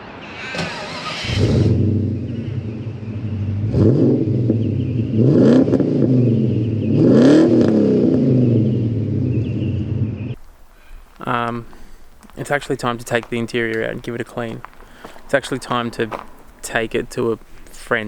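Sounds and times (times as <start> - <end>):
car engine revving: 0.7 - 10.4.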